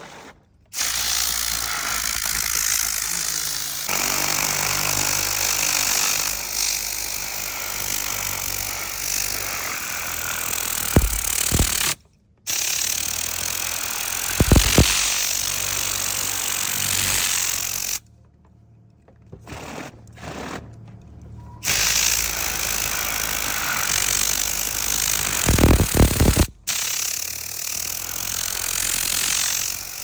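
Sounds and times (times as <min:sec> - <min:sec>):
cleaning machine hissing: 0:10.5 - 0:12.7, 0:14.4 - 0:15.4, 0:21.6 - 0:27.2.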